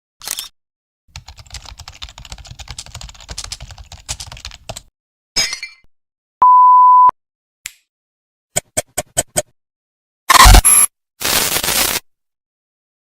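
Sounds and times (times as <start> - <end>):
loud steady beep tone: 6.4 - 7.1, 10.3 - 10.9.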